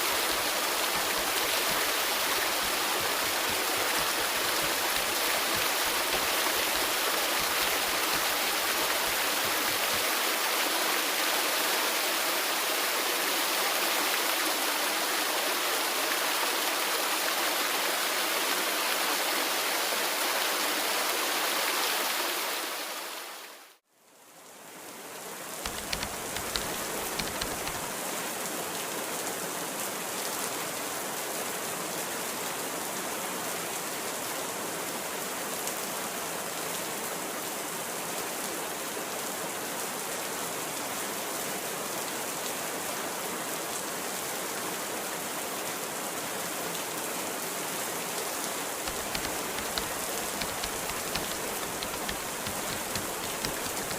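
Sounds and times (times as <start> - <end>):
waterfall pouring: 0.0 - 10.4, 48.8 - 53.9
steady rain: 0.0 - 53.9.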